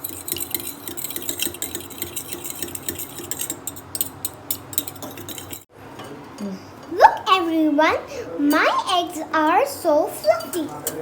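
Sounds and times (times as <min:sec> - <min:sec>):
beater clinking against bowl: 0:00.0 - 0:05.7.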